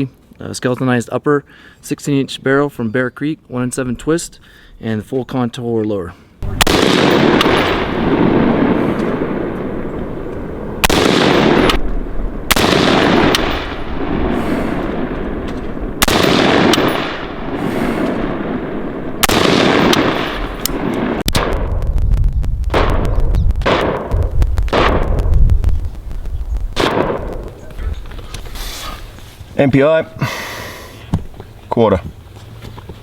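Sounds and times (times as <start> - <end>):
rifle shots with echo: 6.4 - 21.8, 22.7 - 25.4, 26.7 - 27.7
sharp cracks: 6.4 - 29.3.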